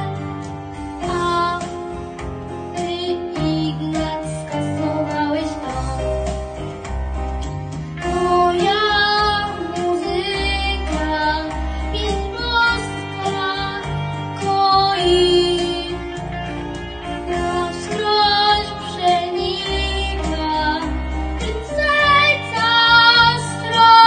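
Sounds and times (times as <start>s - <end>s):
girl singing: 0.0s - 0.3s, 1.0s - 1.8s, 2.7s - 6.0s, 8.0s - 16.0s, 17.3s - 24.0s
instrumental backing track: 0.0s - 24.0s.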